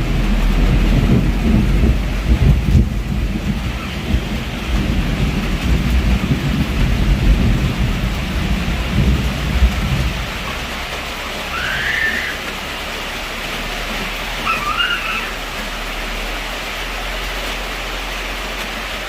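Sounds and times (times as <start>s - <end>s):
sharp thunder crack: 0.0s - 10.6s
thunder rumbling: 0.0s - 12.8s
heavy rain falling: 0.0s - 19.0s.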